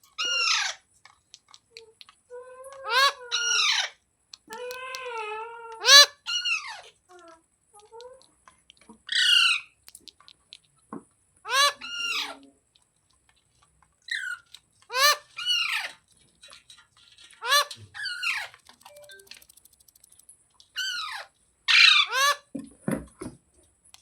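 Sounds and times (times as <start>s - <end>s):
parrot squawking: 0.2s - 0.8s, 2.8s - 4.0s, 5.8s - 6.9s, 9.1s - 9.7s, 11.5s - 12.4s, 14.1s - 16.0s, 17.4s - 18.5s, 20.8s - 22.4s.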